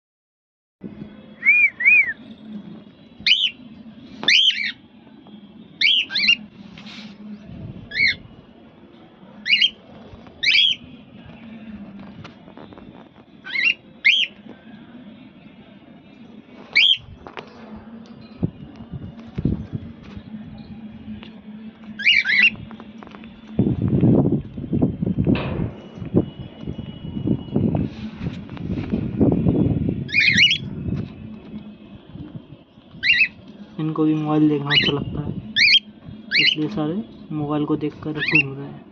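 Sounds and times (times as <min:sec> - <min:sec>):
cockatiel whistling calls: 0:04.2 - 0:04.8, 0:05.8 - 0:06.4, 0:07.9 - 0:08.2, 0:10.4 - 0:10.8, 0:13.4 - 0:14.4, 0:16.7 - 0:17.0, 0:22.0 - 0:22.6, 0:30.1 - 0:30.7, 0:33.0 - 0:33.4, 0:35.6 - 0:36.6.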